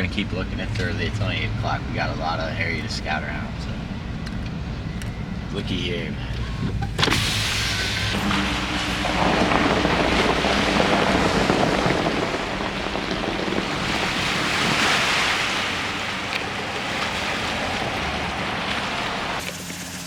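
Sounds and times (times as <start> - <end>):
wind buffeting microphone: 0.0 - 19.4
waves washing against shore: 7.1 - 20.0.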